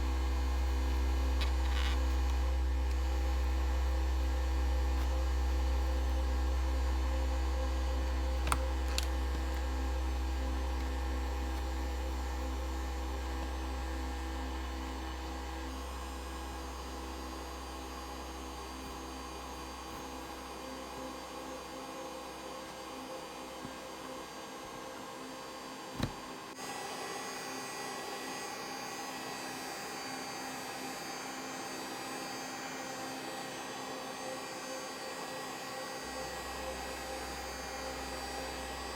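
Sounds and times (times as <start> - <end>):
heat gun whirring hum: 8.2 - 12.6.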